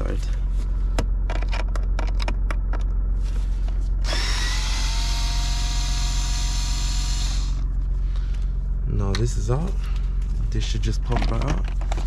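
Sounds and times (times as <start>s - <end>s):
power drill running: 4.0s - 7.6s.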